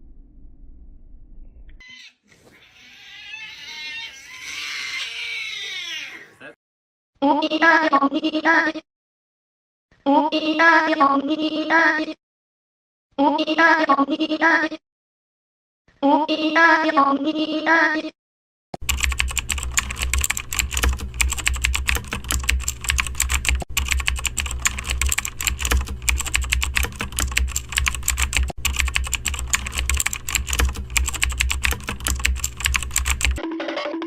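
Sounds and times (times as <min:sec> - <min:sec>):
typing on computer keyboard: 0:18.8 - 0:33.4.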